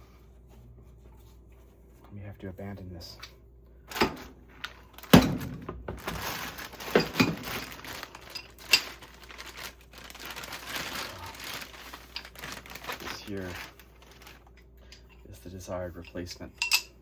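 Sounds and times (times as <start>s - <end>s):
rustling and crinkling: 0.0s - 2.3s, 3.9s - 16.3s.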